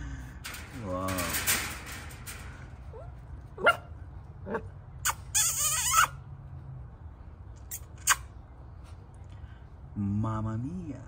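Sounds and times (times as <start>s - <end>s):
puppies yelping: 2.9s - 6.2s.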